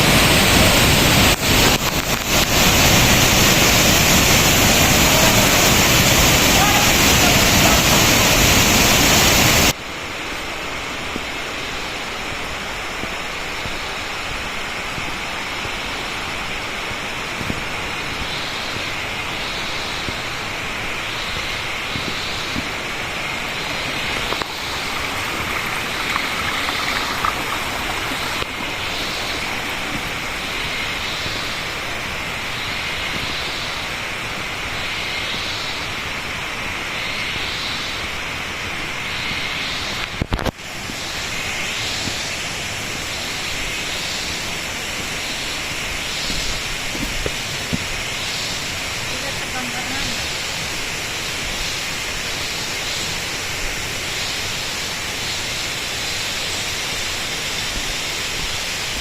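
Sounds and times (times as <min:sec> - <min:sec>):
waterfall rushing hiss: 0:00.0 - 0:59.0
higher pulsing hiss: 0:15.2 - 0:59.0.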